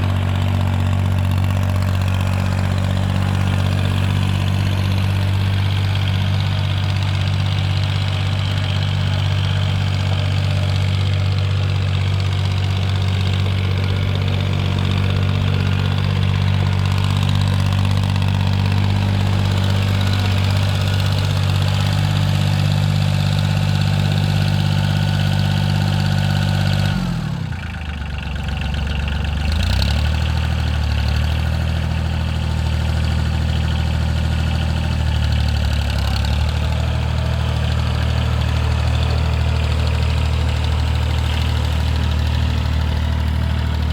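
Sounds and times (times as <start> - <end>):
tractor diesel engine running: 0.0 - 43.9.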